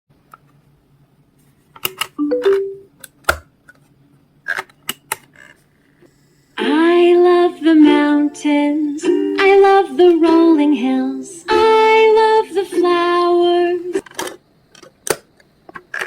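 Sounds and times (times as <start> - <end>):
button clicks: 2.2 - 2.8.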